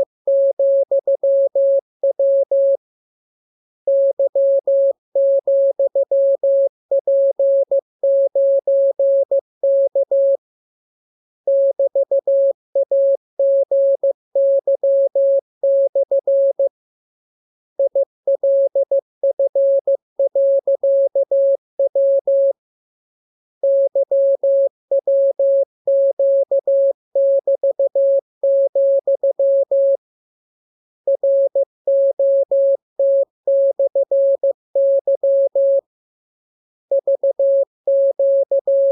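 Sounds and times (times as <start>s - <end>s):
morse code beeps: 36.9s - 38.9s.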